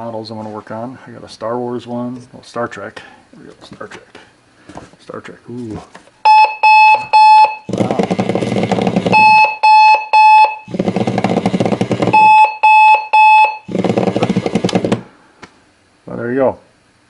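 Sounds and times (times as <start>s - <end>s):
alarm clock high beeps: 6.2s - 7.7s, 9.1s - 10.7s, 12.1s - 13.7s
bed shaker buzzing: 7.7s - 9.4s, 10.7s - 12.5s, 13.7s - 15.1s.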